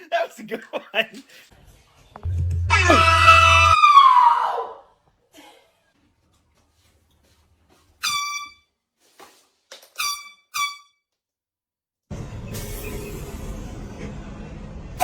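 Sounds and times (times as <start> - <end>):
air horn blasts: 8.0 - 8.6, 10.0 - 10.9.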